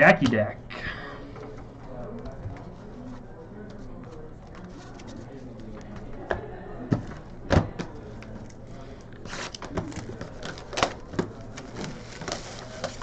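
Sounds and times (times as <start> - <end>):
cards rustling: 7.9 - 13.0.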